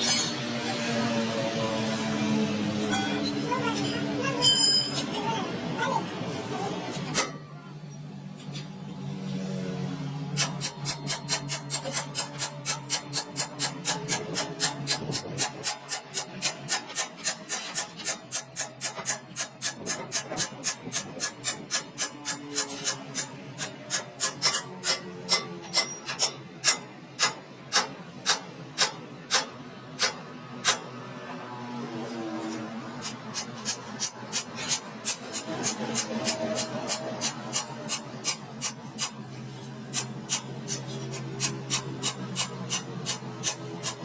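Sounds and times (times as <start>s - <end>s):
metal being hand-filed: 10.4s - 30.9s, 32.4s - 44.0s.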